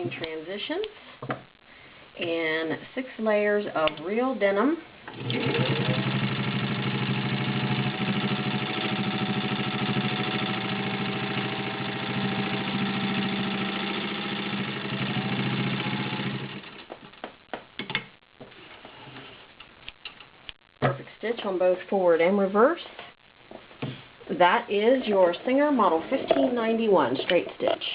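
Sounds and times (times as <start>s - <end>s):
sewing machine motor running: 5.1s - 16.9s.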